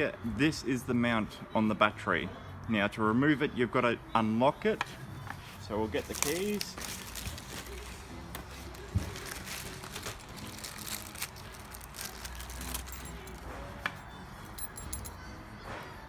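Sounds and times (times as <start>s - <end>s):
keys jangling: 12.0s - 15.3s.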